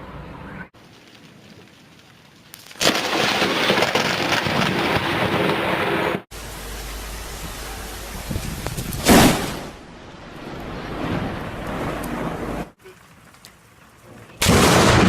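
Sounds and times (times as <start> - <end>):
loud thunderclap rumbling: 2.8 - 12.8, 14.4 - 15.0
wind noise: 4.5 - 12.8
rain hissing: 5.0 - 15.0.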